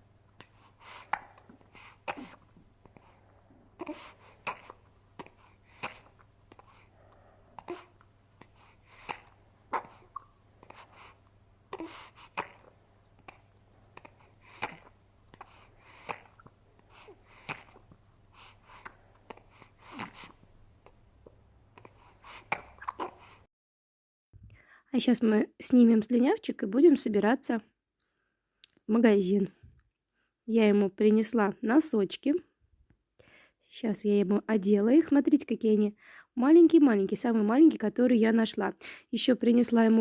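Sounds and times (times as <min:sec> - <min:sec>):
infant sucking and gulping: 0:00.3 - 0:23.5.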